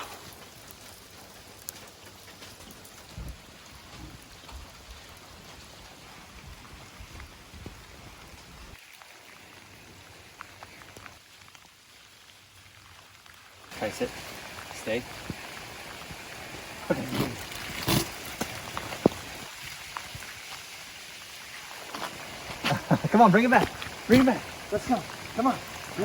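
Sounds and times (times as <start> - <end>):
heavy rain: 0.0 - 26.0.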